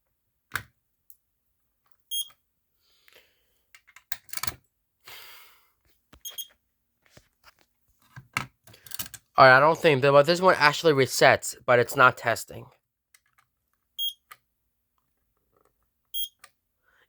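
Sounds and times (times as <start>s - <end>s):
smoke alarm chirps: 2.1s - 2.3s, 6.2s - 6.5s, 14.0s - 14.2s, 16.2s - 16.4s.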